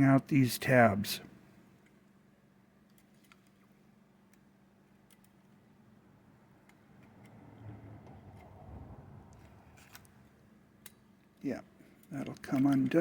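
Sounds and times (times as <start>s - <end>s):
metal scraping and rubbing: 7.0s - 10.4s.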